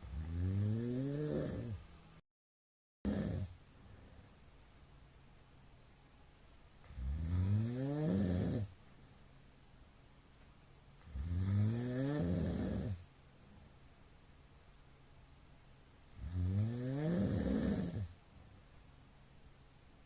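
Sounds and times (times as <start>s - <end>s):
man snoring loudly: 0.0s - 1.9s, 3.1s - 3.6s, 6.9s - 8.7s, 11.0s - 13.0s, 16.1s - 18.1s.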